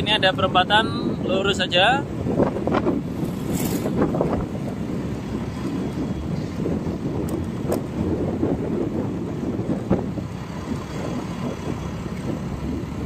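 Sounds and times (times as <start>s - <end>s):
road and engine rumble: 0.0s - 13.0s
wind buffeting microphone: 0.0s - 13.0s.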